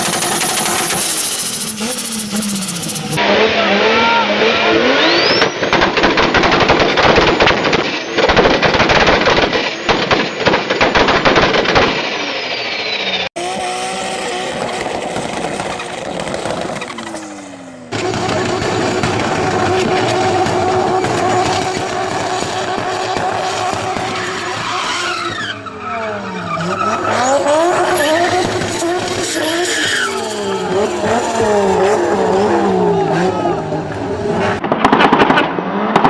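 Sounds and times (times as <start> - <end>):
rapid fluttering turbo chatter: 0.0 - 3.2
turbo whistle: 0.0 - 3.2, 5.0 - 5.6
turbocharged car engines revving: 0.0 - 6.0, 12.4 - 36.0.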